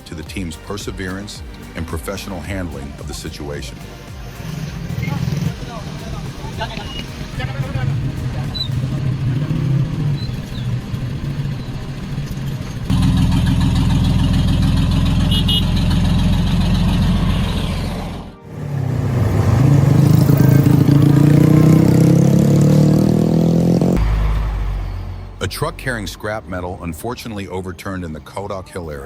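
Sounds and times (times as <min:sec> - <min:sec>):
diesel engine running and revving: 0:03.8 - 0:26.2.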